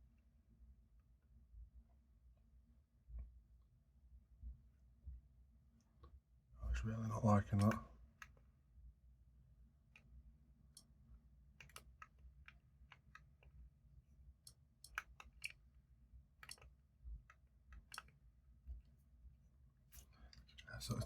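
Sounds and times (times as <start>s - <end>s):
faint small clicks of handling: 7.5s - 8.5s, 9.9s - 13.7s, 14.4s - 15.7s, 16.4s - 21.0s.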